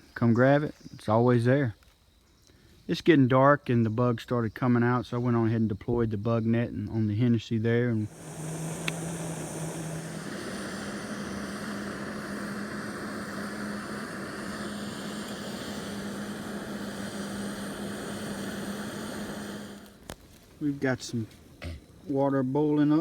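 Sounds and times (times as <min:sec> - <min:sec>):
camp stove burner hissing: 0:07.7 - 0:23.0.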